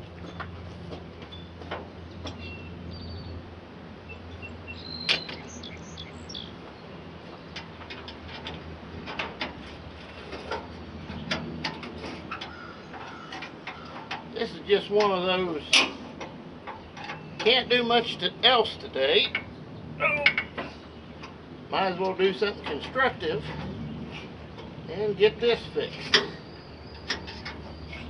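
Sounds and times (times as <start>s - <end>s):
high bird chirps: 4.1s - 6.6s
light clicks and knocks: 6.6s - 18.0s.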